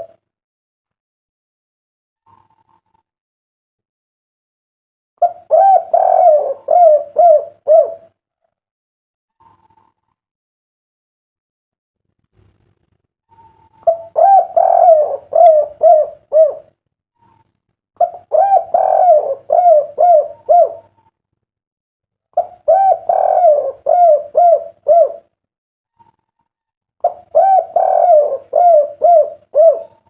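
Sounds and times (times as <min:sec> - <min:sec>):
dove cooing: 0:05.2 - 0:08.2, 0:13.3 - 0:16.7, 0:18.0 - 0:21.1, 0:22.4 - 0:25.3, 0:27.0 - 0:30.0.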